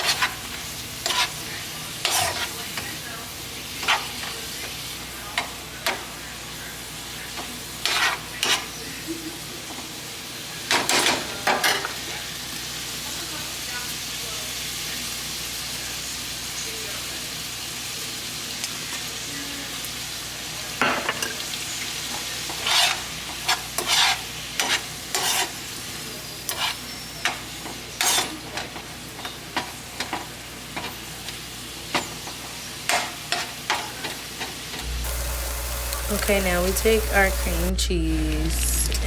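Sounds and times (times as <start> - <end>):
utensil scraping a pan: 0.0 - 2.8, 7.8 - 8.7, 22.4 - 25.6, 28.0 - 28.4
spinach sizzling in butter: 0.0 - 39.0.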